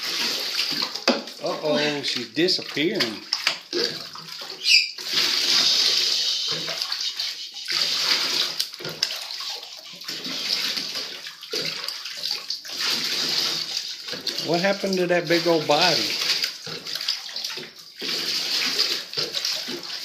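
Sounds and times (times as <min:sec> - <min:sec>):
bath water running: 0:00.0 - 0:20.0
high squeak: 0:04.6 - 0:05.0.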